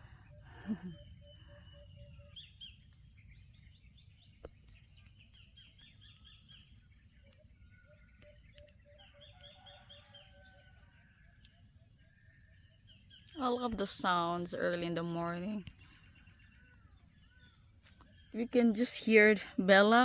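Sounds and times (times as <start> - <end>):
birds chirping: 0.0 - 11.3, 12.0 - 20.0
insects droning: 0.0 - 20.0
small tick: 8.1 - 9.6.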